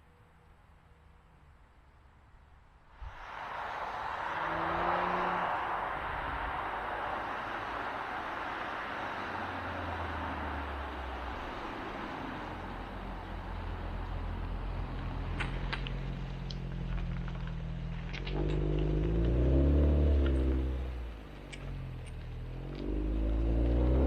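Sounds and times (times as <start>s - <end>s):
road and engine noise: 0.0s - 24.0s
low engine drone: 3.0s - 21.2s.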